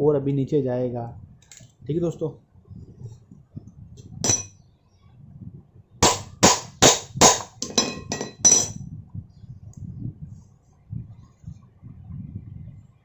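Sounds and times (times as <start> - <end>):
hammer tapping on metal: 4.2 - 4.5, 6.0 - 8.8.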